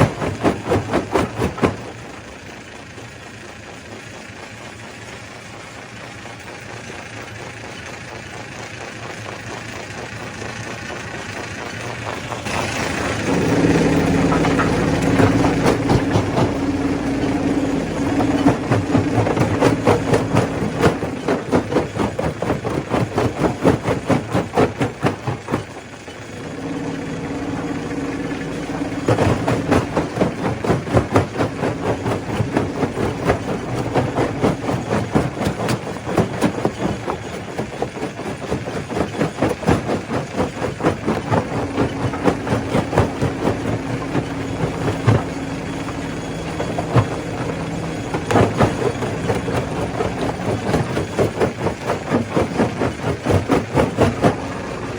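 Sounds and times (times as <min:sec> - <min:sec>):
machine hum: 0:00.0 - 0:02.4, 0:12.1 - 0:54.9.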